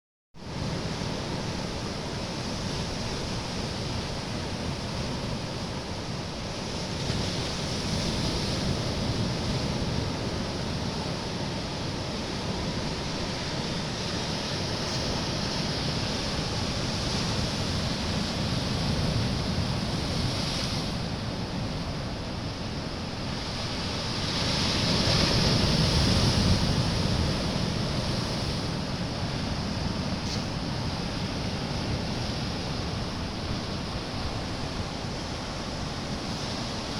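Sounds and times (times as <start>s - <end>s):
sea waves breaking on beach: 0.4s - 36.9s.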